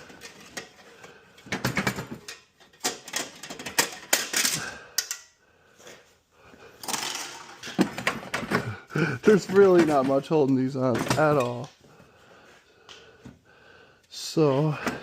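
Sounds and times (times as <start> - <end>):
hand tools clanking on metal: 7.6 - 11.7.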